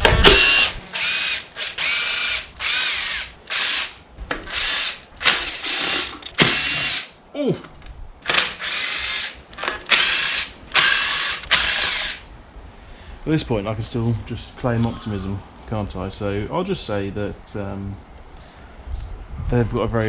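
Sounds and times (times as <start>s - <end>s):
power drill motor whine: 0.0s - 7.1s, 8.3s - 12.2s.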